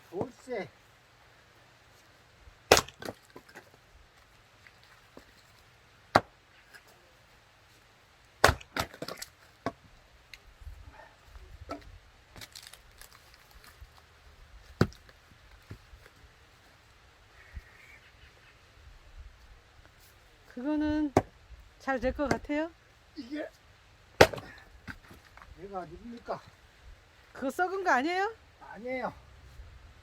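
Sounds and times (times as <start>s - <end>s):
axe chopping firewood: 2.7s - 3.7s, 6.1s - 6.4s, 8.4s - 9.9s, 14.8s - 15.1s, 21.1s - 21.4s, 22.2s - 22.5s, 24.2s - 25.2s
split wood pieces falling: 2.7s - 3.8s, 8.4s - 9.8s, 12.3s - 14.0s, 24.2s - 25.5s.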